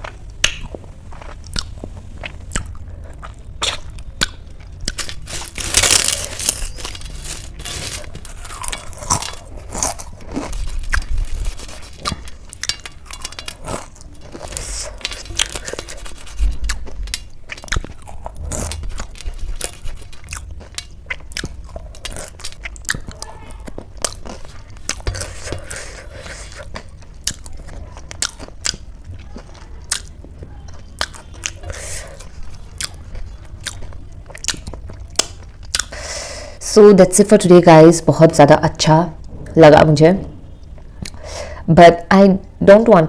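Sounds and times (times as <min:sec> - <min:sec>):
person chewing and crunching food: 0:00.0 - 0:36.2.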